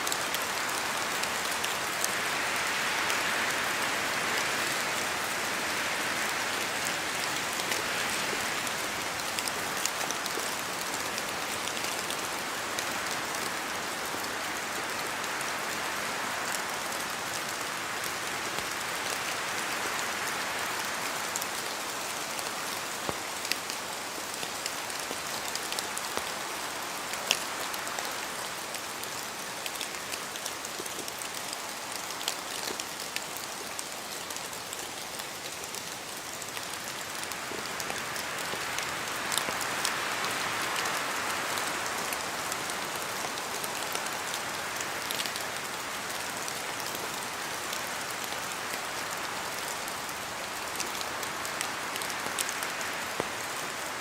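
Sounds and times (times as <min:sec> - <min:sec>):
steady rain through trees: 0:00.0 - 0:54.0
wind: 0:00.0 - 0:54.0
raindrops ticking close by: 0:16.4 - 0:54.0.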